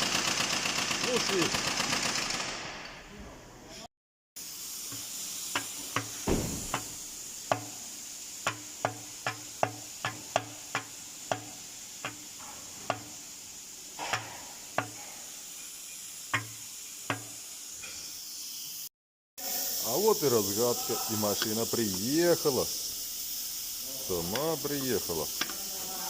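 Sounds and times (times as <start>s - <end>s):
steady hiss: 4.4s - 26.0s
sharp engine knocks with thud: 5.6s - 7.7s.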